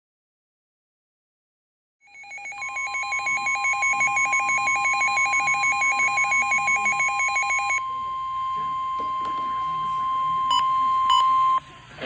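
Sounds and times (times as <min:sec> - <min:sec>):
radio alarm warbling: 0:02.1 - 0:11.6
steady warning tone: 0:02.1 - 0:11.7.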